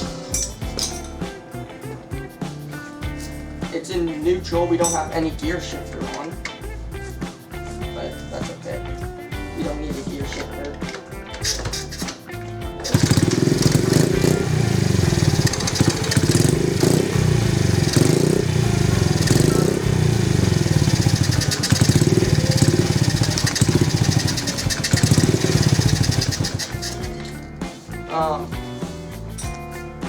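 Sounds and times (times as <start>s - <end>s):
small motorbike engine revving: 12.8s - 27.3s.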